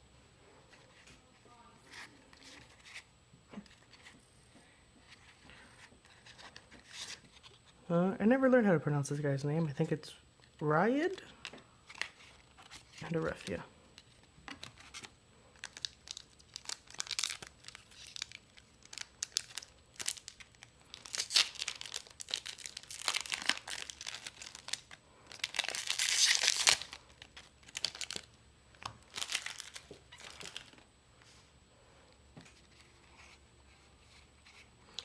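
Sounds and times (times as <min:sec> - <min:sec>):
wrapper crinkling and tearing: 0:11.9 - 0:30.8.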